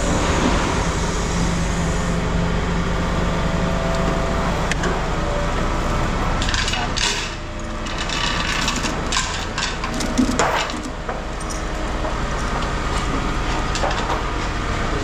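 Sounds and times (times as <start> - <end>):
vehicle engine idling: 0.0 - 15.0
scrap metal knocking and clanking: 6.4 - 14.5.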